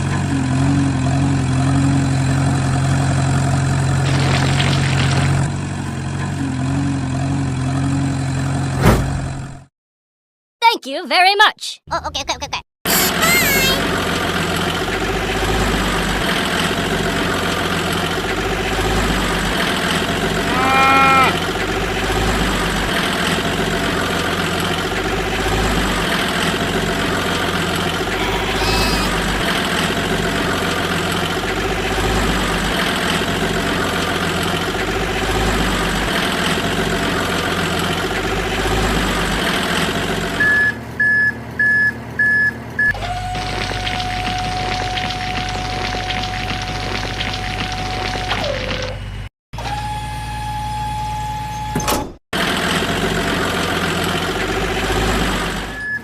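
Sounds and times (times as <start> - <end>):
toy engine sound effect: 12.9 - 13.9, 28.1 - 29.5.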